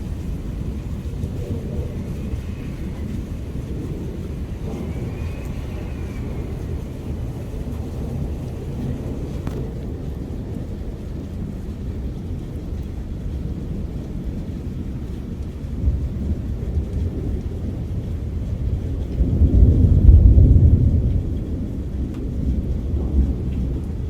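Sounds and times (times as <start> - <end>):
rolling thunder: 0.0 - 24.0.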